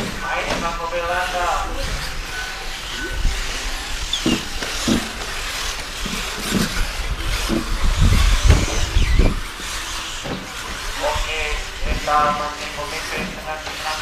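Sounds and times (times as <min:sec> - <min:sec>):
rc cars motor whine and tyre hiss: 0:00.0 - 0:14.0
low thumps: 0:04.1 - 0:09.6.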